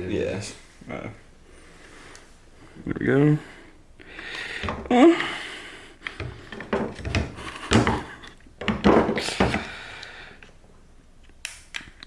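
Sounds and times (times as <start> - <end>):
parts clattering: 4.2 - 5.0, 6.0 - 10.6
door handle parts clicking: 6.1 - 9.7.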